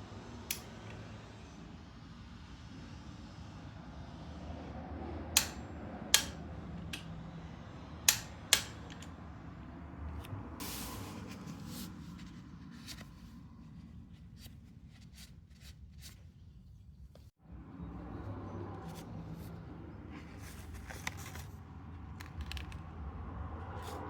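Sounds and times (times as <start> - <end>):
tools clicking and knocking: 5.4 - 5.6, 6.2 - 7.1, 8.1 - 9.2.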